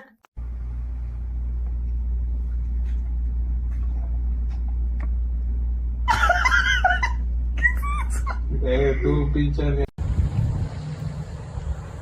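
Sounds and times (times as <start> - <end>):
low rumble: 10.0 - 12.0.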